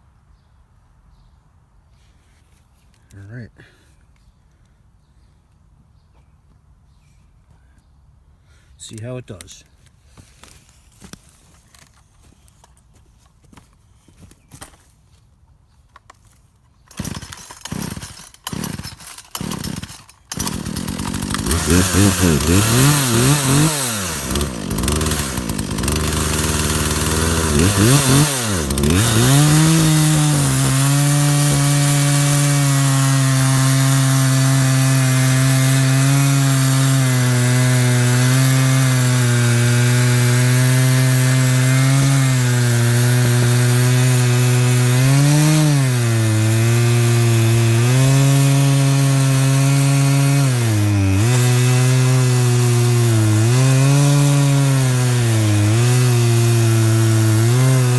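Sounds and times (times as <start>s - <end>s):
chainsaw cutting through log: 16.9s - 57.9s.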